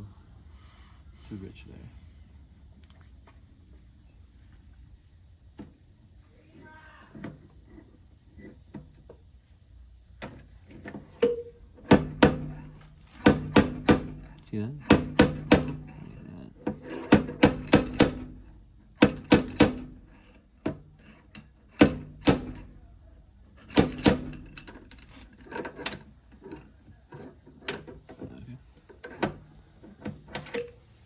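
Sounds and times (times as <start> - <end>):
hammer knocks: 11.2 - 16.0, 16.9 - 18.3.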